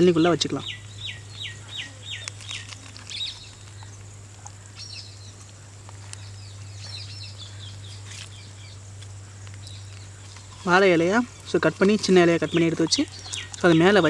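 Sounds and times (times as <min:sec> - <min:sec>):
birds chirping: 0:00.0 - 0:14.0
steady low hum: 0:00.0 - 0:14.0.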